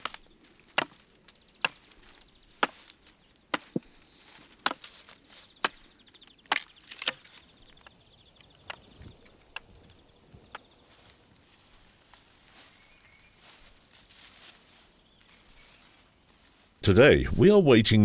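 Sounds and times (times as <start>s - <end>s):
axe chopping wood: 3.5s - 3.8s.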